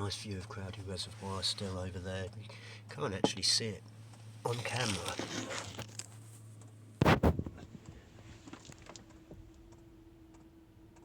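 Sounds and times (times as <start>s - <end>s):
quiet steady hum: 0.0s - 11.0s
faint light ticks: 7.8s - 11.0s.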